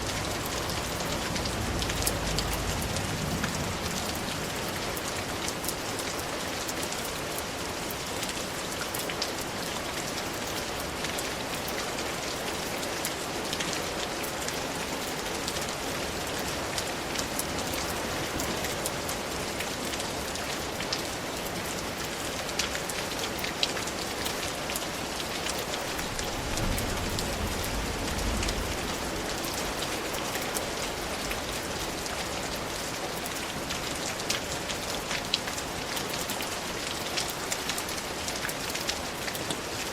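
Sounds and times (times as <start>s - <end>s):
low rumble: 0.0s - 4.9s
rain falling: 0.0s - 39.9s.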